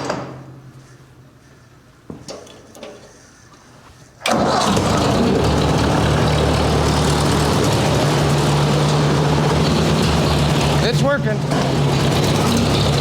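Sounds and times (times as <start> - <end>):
tractor engine idling: 4.2 - 13.0
tractor engine starting: 4.2 - 13.0.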